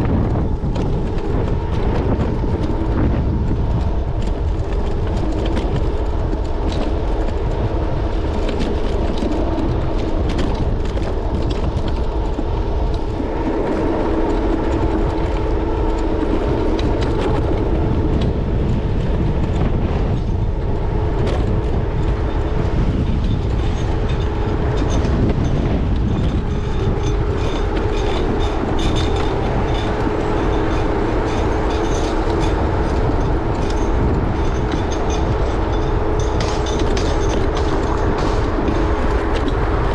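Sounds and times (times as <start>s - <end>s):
constant hum: 0.0s - 39.9s
wind and road rumble: 0.0s - 39.9s
rattling ticks from bumps: 21.2s - 39.9s.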